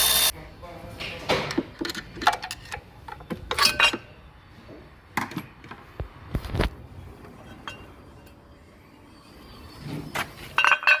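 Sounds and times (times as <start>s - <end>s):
metal tools clinking: 1.8s - 4.1s, 10.6s - 11.0s.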